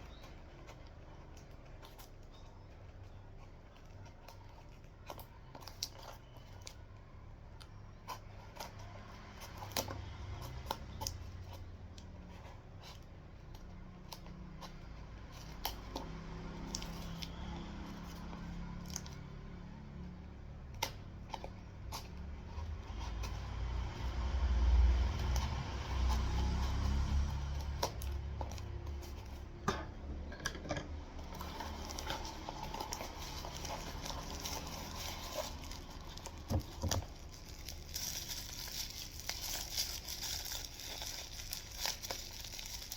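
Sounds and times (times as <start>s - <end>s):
packaging clicks and crinkles: 0.0s - 19.4s, 31.2s - 42.9s
low background hum: 0.0s - 42.9s.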